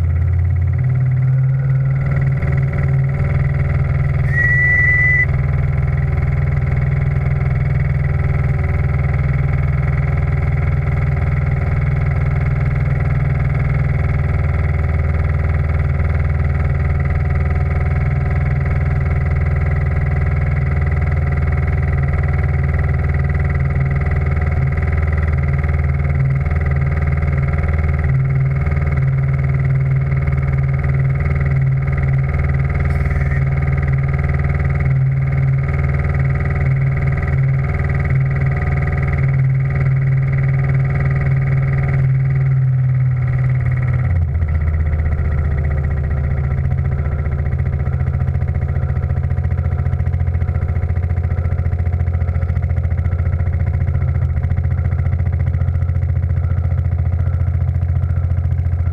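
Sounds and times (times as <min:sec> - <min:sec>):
steam engine and boiler hum: 0:00.0 - 0:58.9.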